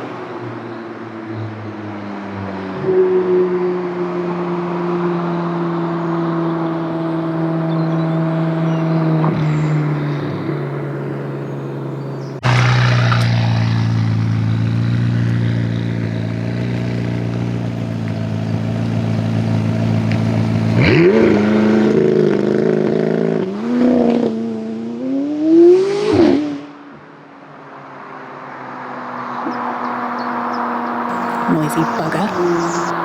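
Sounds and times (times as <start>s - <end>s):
car engine revving: 7.3s - 22.6s.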